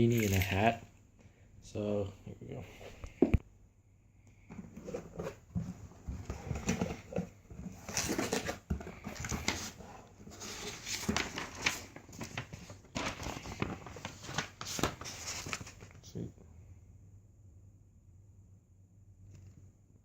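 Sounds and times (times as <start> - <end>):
packaging rustling and crinkling: 4.8 - 16.0.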